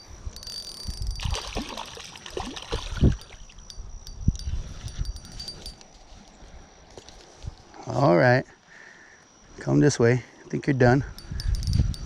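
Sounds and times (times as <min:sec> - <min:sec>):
water splashing and gurgling: 0:01.2 - 0:03.6.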